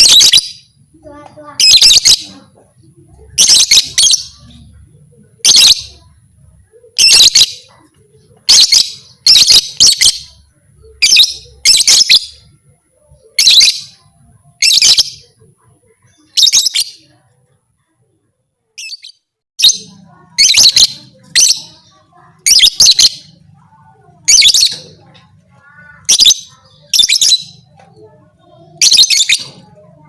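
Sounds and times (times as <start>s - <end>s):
lovebird shrill chirping: 0.0s - 0.6s, 1.6s - 2.3s, 3.4s - 4.5s, 7.0s - 7.7s, 8.5s - 10.4s, 11.0s - 12.4s, 13.4s - 14.0s, 14.6s - 15.3s, 16.2s - 17.0s, 18.8s - 21.8s, 22.4s - 23.4s, 24.3s - 24.9s, 26.0s - 27.7s, 28.8s - 29.5s.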